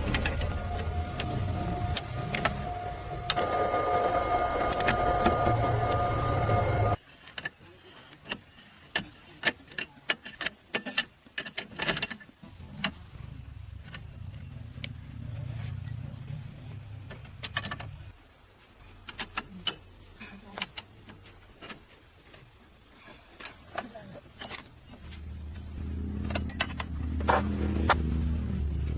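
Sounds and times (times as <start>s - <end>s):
low steady hum: 0.0s - 7.0s, 24.7s - 28.9s.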